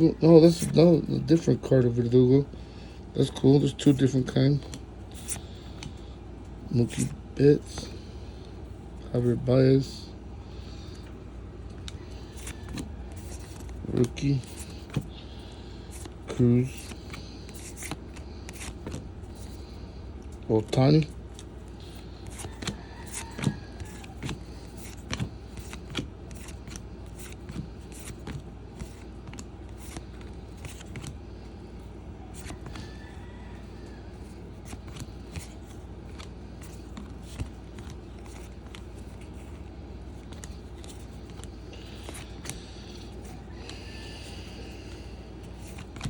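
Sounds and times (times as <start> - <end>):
cards flipped by hand: 6.8 - 7.9, 11.6 - 20.4, 21.2 - 33.0, 34.3 - 44.1, 45.5 - 46.0.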